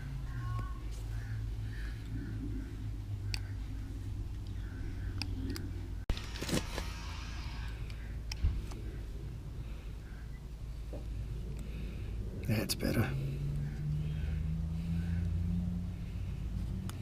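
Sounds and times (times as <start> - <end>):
light metallic clicks: 4.4 - 5.7.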